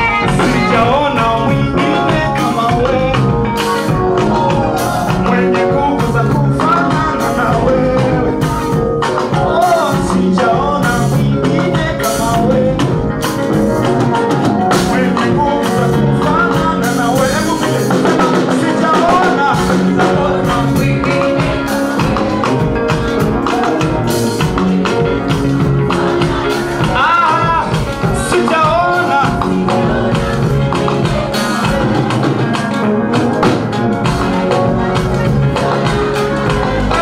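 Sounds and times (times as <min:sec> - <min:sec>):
drum kit steady beat: 0:00.0 - 0:37.0
praise band singing: 0:00.0 - 0:37.0.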